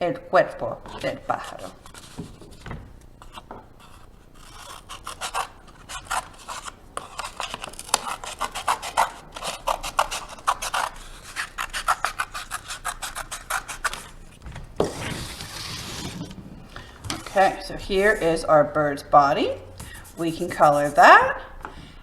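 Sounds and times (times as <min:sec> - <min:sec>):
scissors cutting paper plate: 0:00.9 - 0:02.6, 0:03.2 - 0:16.3, 0:19.8 - 0:21.3.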